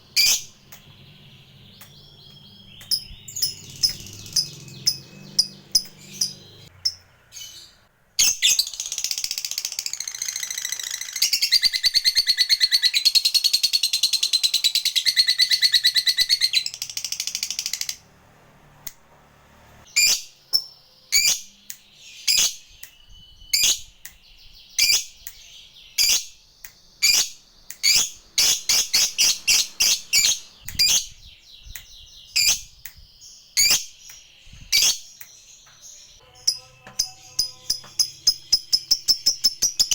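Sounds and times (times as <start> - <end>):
bird sharp chirps: 0.0 - 18.0, 19.8 - 39.9
bird chattering trill: 0.1 - 7.6, 36.3 - 39.9.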